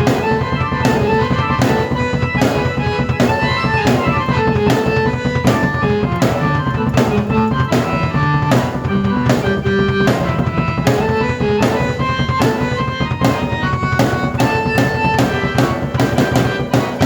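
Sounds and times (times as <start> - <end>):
drum beat with cymbals: 0.0 - 17.0
keyboard chords: 0.0 - 17.0.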